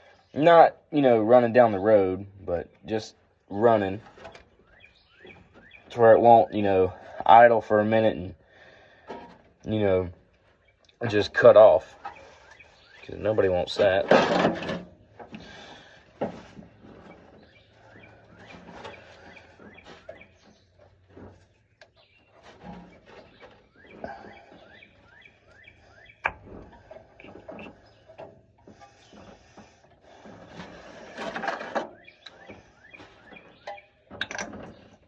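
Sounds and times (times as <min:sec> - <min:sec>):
hand tools clicking and knocking: 0:26.2 - 0:35.0.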